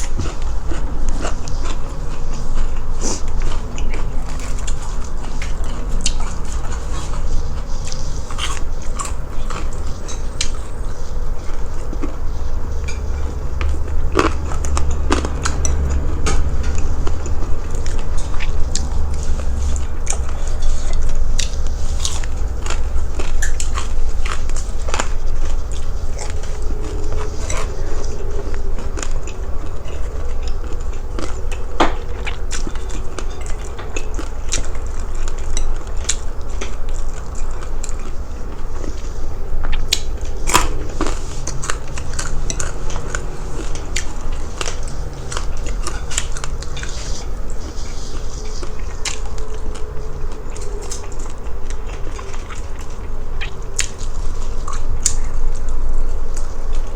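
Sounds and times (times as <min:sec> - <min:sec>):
crunchy chewing: 0:00.0 - 0:56.9
steady low hum: 0:00.0 - 0:56.9.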